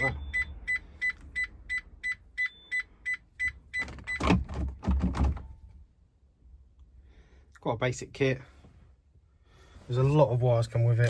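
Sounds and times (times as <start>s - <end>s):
reversing warning beeps: 0.0s - 4.3s.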